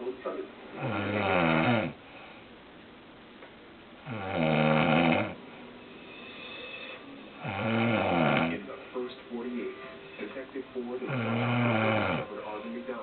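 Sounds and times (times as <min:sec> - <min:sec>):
person snoring: 0:00.8 - 0:02.0, 0:04.0 - 0:05.4, 0:06.0 - 0:08.6, 0:11.1 - 0:12.3.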